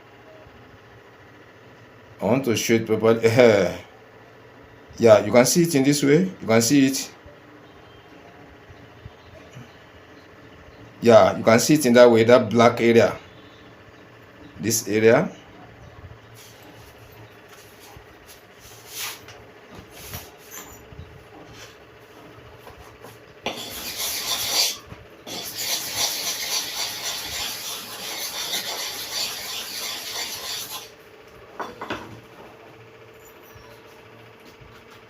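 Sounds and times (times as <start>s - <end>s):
blade scraping on sharpening stone: 23.5s - 30.9s.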